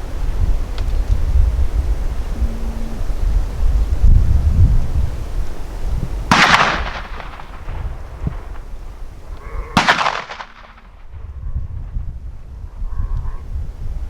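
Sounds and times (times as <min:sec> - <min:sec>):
wind buffeting microphone: 0:00.0 - 0:14.0
shotgun blasts echoing: 0:06.3 - 0:11.3.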